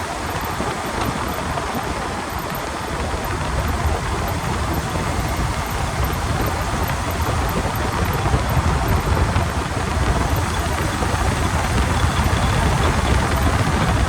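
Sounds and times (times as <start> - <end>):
road and driveline rumble: 0.0 - 14.0.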